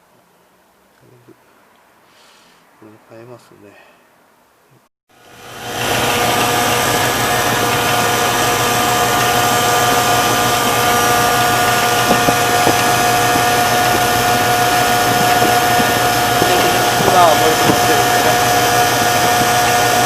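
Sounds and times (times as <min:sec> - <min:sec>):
steady whine: 0:05.1 - 0:20.0
engine idling: 0:05.2 - 0:20.0.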